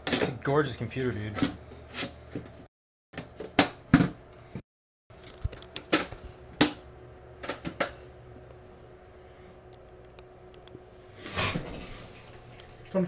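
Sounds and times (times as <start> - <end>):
faint steady hum: 5.2 - 13.0.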